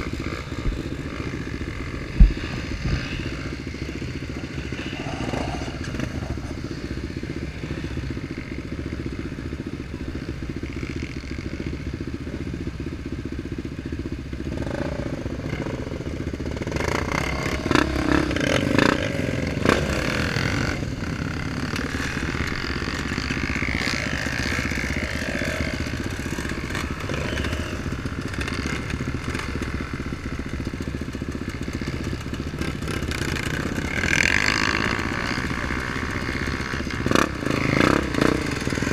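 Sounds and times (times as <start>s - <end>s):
off-road vehicle engine running: 0.0s - 38.9s.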